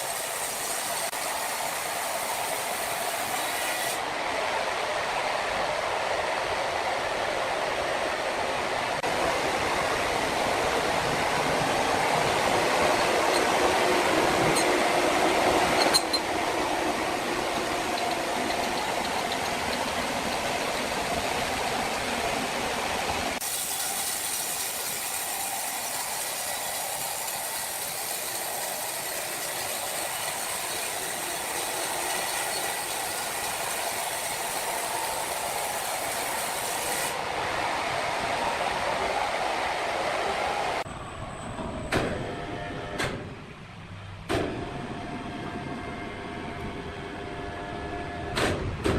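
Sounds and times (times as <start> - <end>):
sawmill saw running: 0.0 - 5.5, 9.0 - 37.7
thin hissy machine noise: 0.0 - 40.8.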